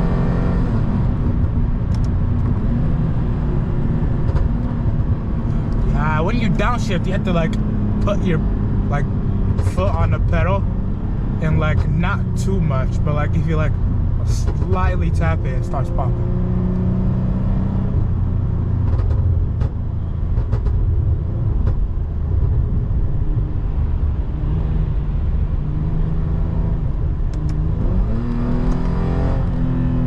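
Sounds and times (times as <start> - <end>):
car engine running: 0.0 - 30.0.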